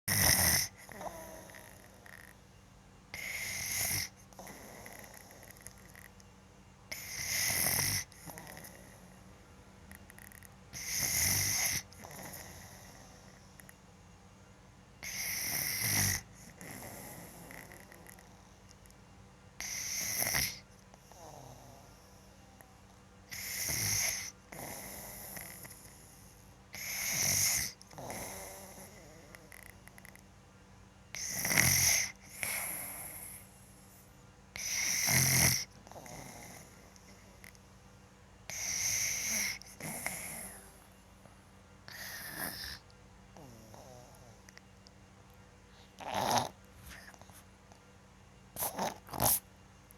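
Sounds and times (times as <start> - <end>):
boy snoring loudly: 0.1 - 2.3, 7.0 - 8.8, 10.1 - 12.8, 15.0 - 18.4, 19.6 - 21.9, 23.3 - 25.8, 26.8 - 29.7, 31.2 - 33.1, 34.6 - 36.7, 41.9 - 42.8, 46.0 - 46.5
soft breath: 45.6 - 46.1, 46.7 - 47.8.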